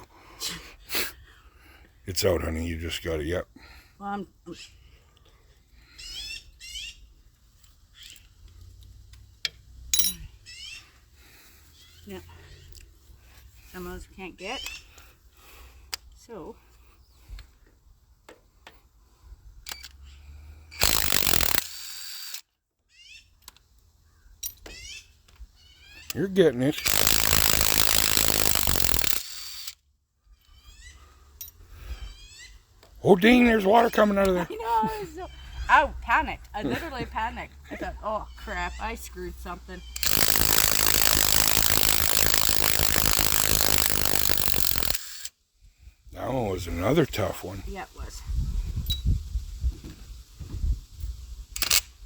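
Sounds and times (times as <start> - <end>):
sharp metallic clank: 9.9 - 10.3
power wrench rattling: 20.7 - 22.4, 25.9 - 29.8, 39.9 - 45.3, 51.6 - 52.0.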